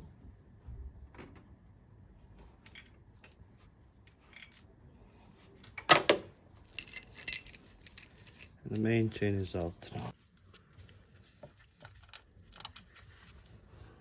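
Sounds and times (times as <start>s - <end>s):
metal parts clicking: 6.6s - 10.1s
metallic chain clatter: 6.6s - 10.1s.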